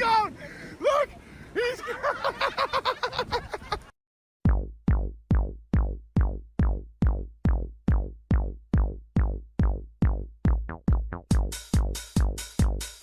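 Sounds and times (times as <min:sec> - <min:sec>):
drum machine kick: 0:04.4 - 0:13.0.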